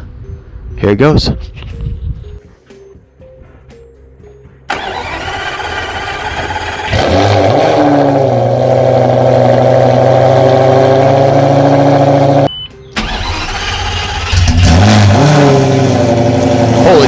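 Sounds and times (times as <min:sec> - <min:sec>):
sports car engine starting and idling: 0:04.7 - 0:17.0.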